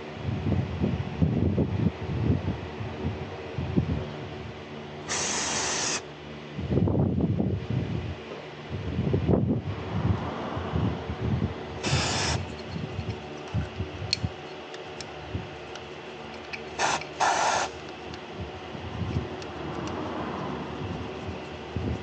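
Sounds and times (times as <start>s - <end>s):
short hissing bursts: 5.1s - 6.0s, 11.8s - 12.5s, 16.8s - 17.8s.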